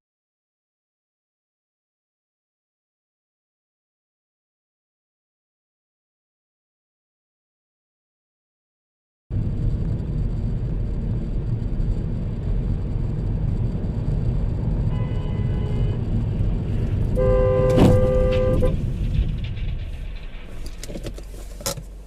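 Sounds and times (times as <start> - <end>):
car road and engine noise: 9.3 - 22.0
car horn honking: 14.8 - 18.9
sharp knock: 17.2 - 20.0.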